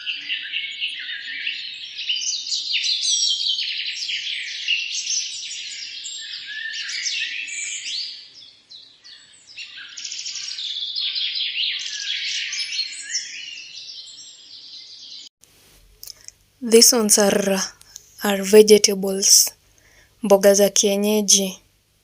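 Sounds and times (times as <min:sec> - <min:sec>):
birds chirping and trilling: 0:00.0 - 0:15.3.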